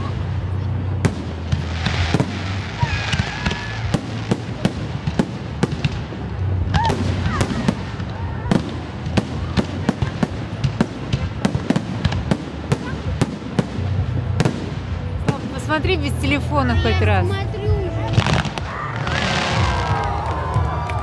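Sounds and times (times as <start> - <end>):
fireworks bangs and cracks: 0.0 - 17.0, 18.1 - 21.0.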